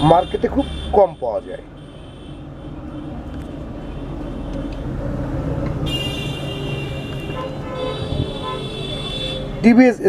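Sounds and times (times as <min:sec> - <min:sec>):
vehicle horn blast: 0:00.0 - 0:02.8, 0:05.8 - 0:09.6
street traffic rumbling: 0:00.0 - 0:10.0.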